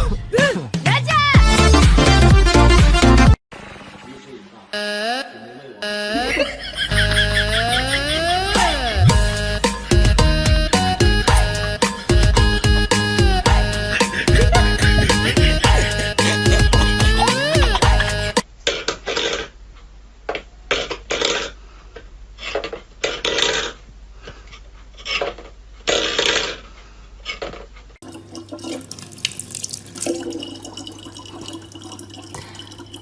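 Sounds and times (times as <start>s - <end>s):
water splashing: 28.0s - 33.0s.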